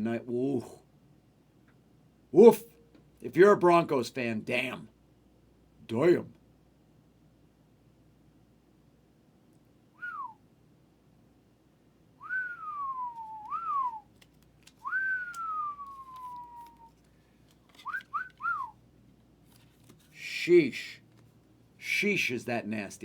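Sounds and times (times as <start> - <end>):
man whistling: 10.0 - 10.4, 12.2 - 14.1, 14.8 - 17.0, 17.8 - 18.8.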